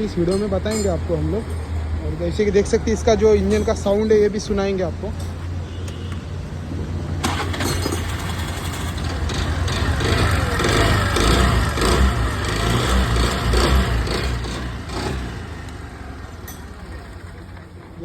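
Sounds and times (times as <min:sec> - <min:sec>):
scooter engine revving: 0:07.2 - 0:18.0.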